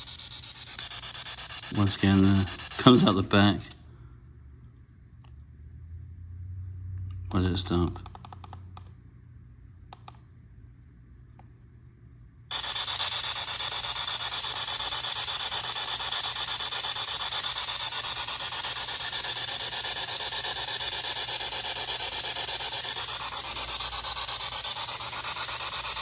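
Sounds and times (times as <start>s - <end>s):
radio static: 1.6s - 3.6s.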